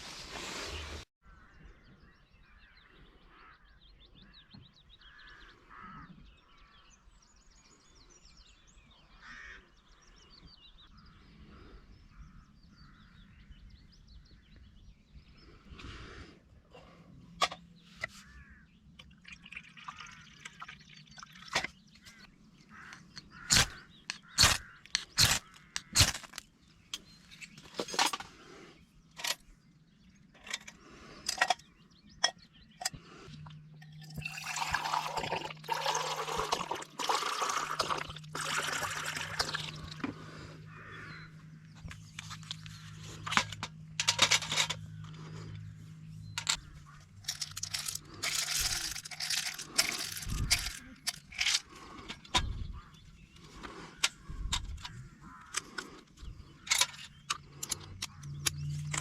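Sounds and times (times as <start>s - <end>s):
liquid pouring or splashing: 19.0s - 21.6s, 34.0s - 40.0s
knocks and clinks of handling: 43.2s - 44.9s, 46.4s - 52.3s.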